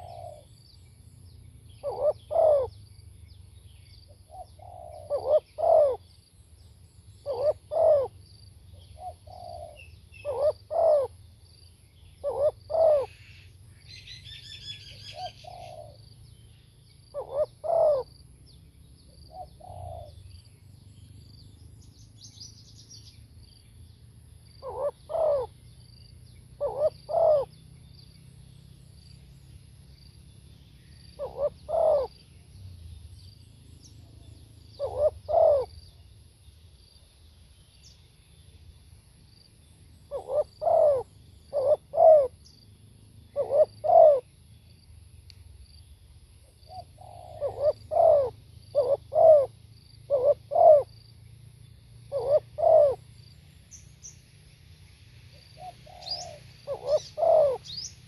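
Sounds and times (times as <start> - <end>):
dove cooing: 0.0 - 0.5, 1.8 - 2.8, 4.3 - 6.1, 7.2 - 8.2, 9.0 - 11.2, 12.2 - 13.3, 14.6 - 16.0, 17.1 - 18.2, 19.3 - 20.2, 24.6 - 25.6, 26.6 - 27.6, 31.2 - 32.3, 34.8 - 35.8, 40.1 - 42.4, 43.3 - 44.3, 46.7 - 50.9, 52.1 - 53.1, 55.6 - 58.0
bird trill: 0.0 - 23.2, 24.5 - 36.1, 39.7 - 44.3, 46.6 - 54.3, 55.4 - 58.0.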